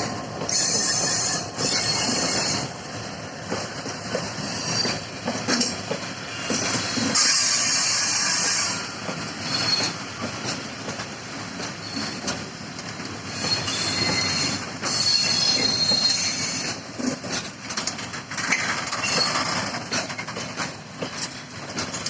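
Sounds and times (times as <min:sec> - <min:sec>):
wheels clattering over rail joints: 0:00.4 - 0:07.3, 0:09.1 - 0:22.0
high wheel squeal: 0:00.5 - 0:02.8, 0:04.4 - 0:05.0, 0:06.4 - 0:10.0, 0:11.8 - 0:12.2, 0:13.3 - 0:16.8, 0:18.9 - 0:19.6.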